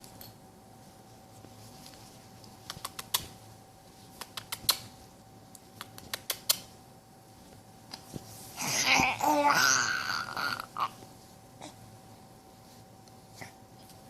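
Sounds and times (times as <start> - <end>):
faint steady hum: 0.0 - 14.0
baby growling vocalizing: 8.6 - 11.0.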